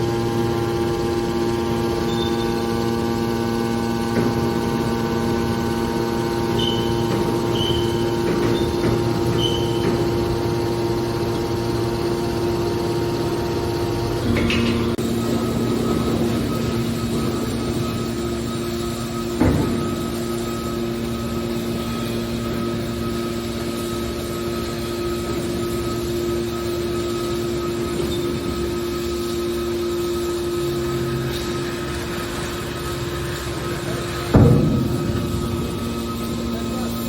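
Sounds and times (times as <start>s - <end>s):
hydraulic baler motor hum: 0.0s - 37.0s
short high squeaks: 2.1s - 2.7s, 6.4s - 10.4s.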